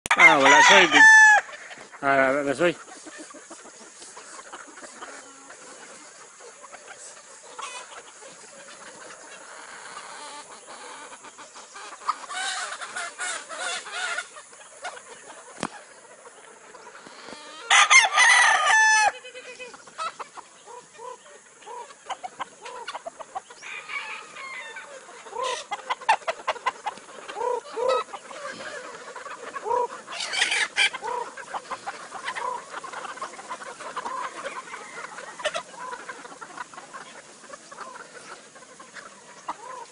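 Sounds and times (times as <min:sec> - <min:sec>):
rooster crowing: 0:00.1 - 0:01.6, 0:17.5 - 0:19.2, 0:23.6 - 0:25.6
chickens clucking and squawking: 0:00.1 - 0:39.9.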